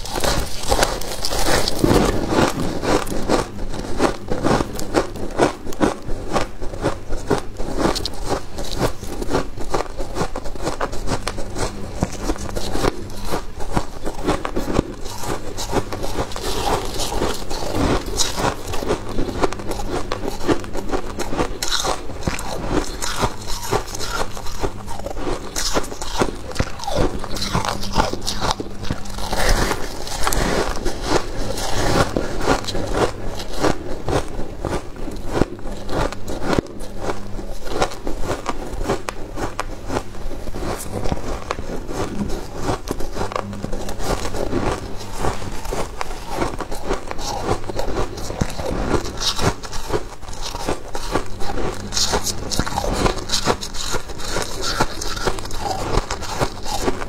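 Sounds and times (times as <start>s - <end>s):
ice crunching being chewed: 0.0s - 57.0s.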